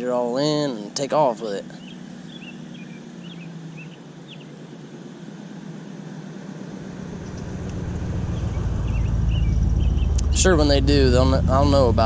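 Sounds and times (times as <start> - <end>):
small birds chirping: 0.0 - 12.0
steady low hum: 0.0 - 12.0
deep rumble: 6.9 - 12.0.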